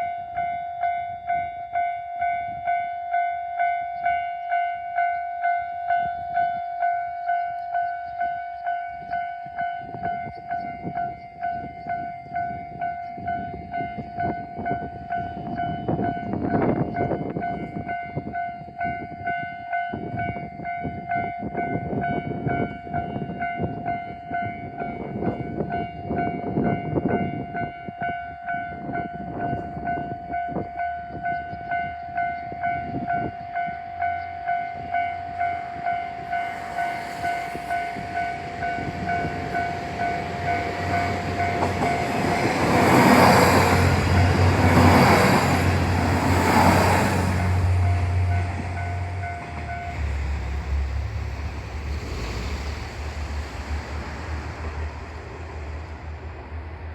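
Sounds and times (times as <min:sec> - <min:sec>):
railcar rumble: 0:00.0 - 0:56.9
wheels clacking over rail joints: 0:35.6 - 0:56.5.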